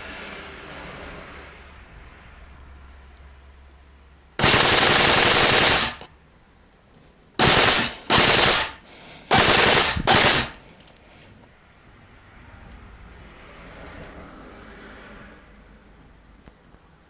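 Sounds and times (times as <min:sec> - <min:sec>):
airsoft gun firing bursts: 0:04.4 - 0:06.1, 0:07.4 - 0:10.6.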